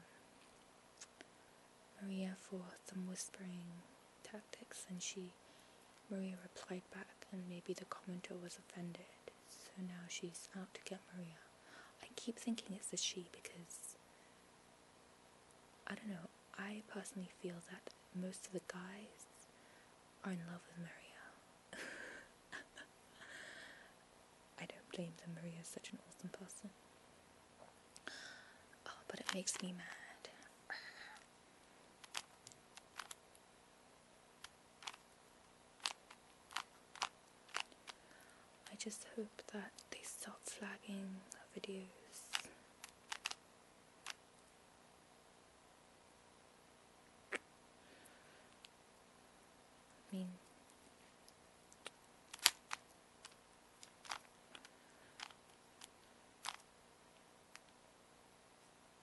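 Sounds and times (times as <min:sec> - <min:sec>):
puzzle cube clicking: 0:29.2 - 0:29.7, 0:32.0 - 0:33.2, 0:34.4 - 0:35.0, 0:35.8 - 0:38.0, 0:42.2 - 0:43.4, 0:51.7 - 0:56.6.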